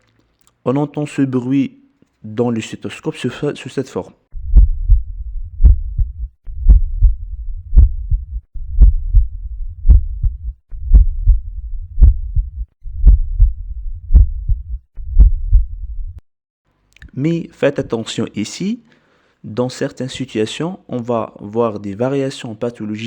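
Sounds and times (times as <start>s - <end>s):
heartbeat through stethoscope: 4.3s - 16.2s.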